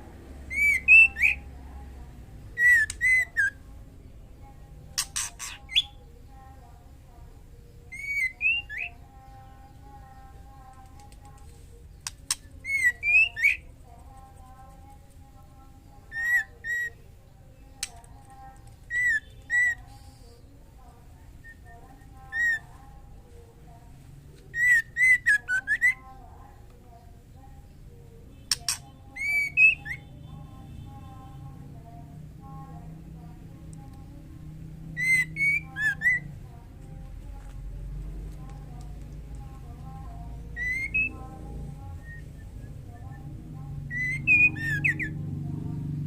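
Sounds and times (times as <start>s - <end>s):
bird whistled calls: 0.5s - 1.4s, 2.6s - 3.6s, 7.9s - 8.9s, 28.6s - 30.1s, 40.6s - 41.2s, 43.9s - 45.1s
sharp clicks: 10.8s - 12.5s, 28.5s - 28.8s
steady low hum: 36.2s - 46.0s.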